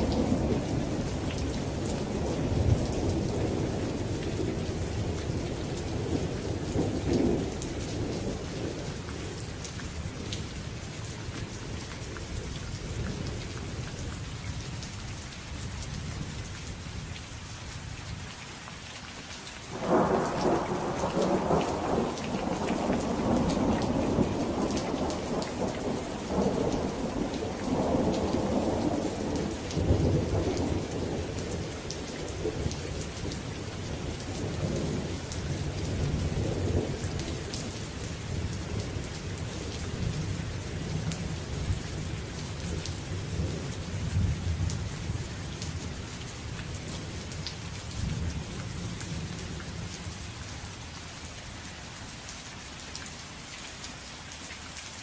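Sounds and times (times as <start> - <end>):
thunder rumbling: 0.0 - 9.5, 19.7 - 45.8
rain pattering: 0.0 - 55.0.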